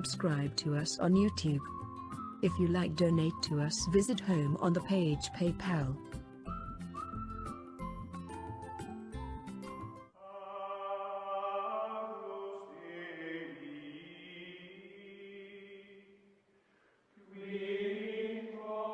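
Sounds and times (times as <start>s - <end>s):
chant of held sung chords: 10.2s - 16.2s, 17.2s - 18.9s.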